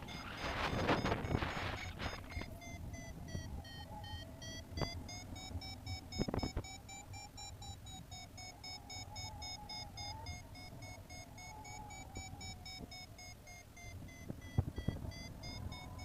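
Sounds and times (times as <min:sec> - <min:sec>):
variometer beeping: 0:00.0 - 0:16.0
wind rumble on microphone: 0:00.1 - 0:04.0, 0:13.9 - 0:16.0.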